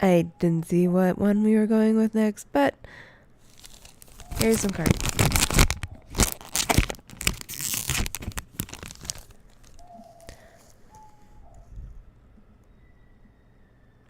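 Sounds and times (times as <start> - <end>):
foil wrapper crinkling and tearing: 3.4 - 10.8.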